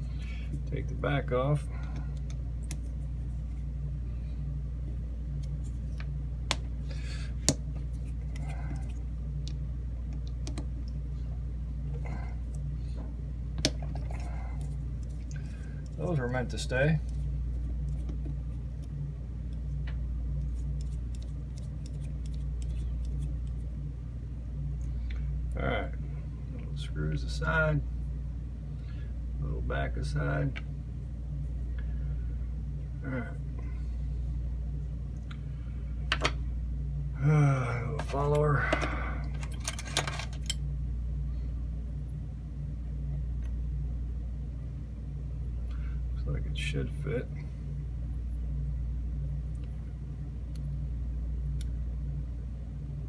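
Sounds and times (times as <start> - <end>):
pulsing low hum: 0.0 - 39.8
low background rumble: 0.0 - 53.0.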